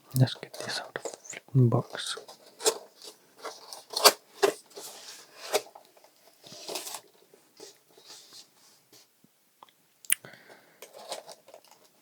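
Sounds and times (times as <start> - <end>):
packaging rustling and crackling: 0.2 - 8.6, 10.6 - 12.0.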